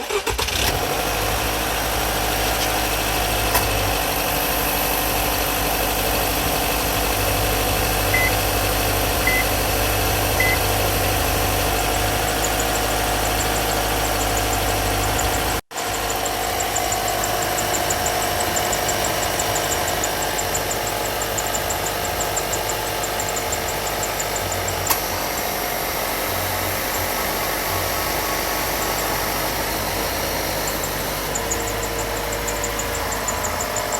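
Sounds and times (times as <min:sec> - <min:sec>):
car engine idling: 0:00.0 - 0:33.9
short beeps: 0:08.2 - 0:08.4, 0:09.2 - 0:09.6, 0:10.4 - 0:10.6
fast faint high ticking: 0:28.7 - 0:33.9.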